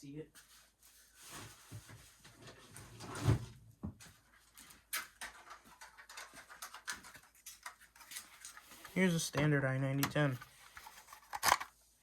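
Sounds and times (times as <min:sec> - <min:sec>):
plastic smoke alarm being handled: 0:04.6 - 0:11.8.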